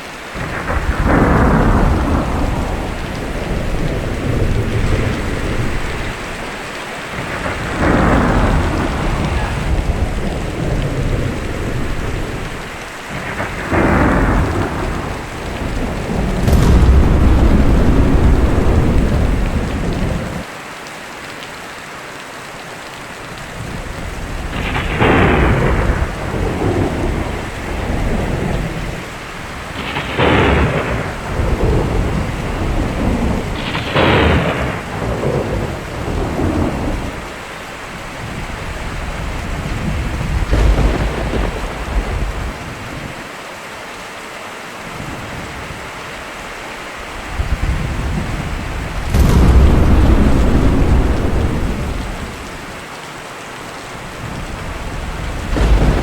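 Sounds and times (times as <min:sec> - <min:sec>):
steady rain: 0:00.0 - 0:56.0
thunder rumbling and cracking: 0:00.4 - 0:20.5, 0:24.0 - 0:37.3, 0:38.2 - 0:43.2, 0:47.2 - 0:52.9, 0:54.2 - 0:56.0.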